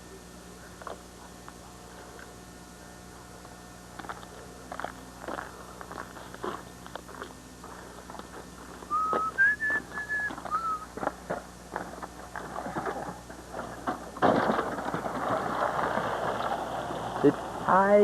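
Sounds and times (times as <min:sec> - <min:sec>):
whistled notes: 0:08.9 - 0:10.9.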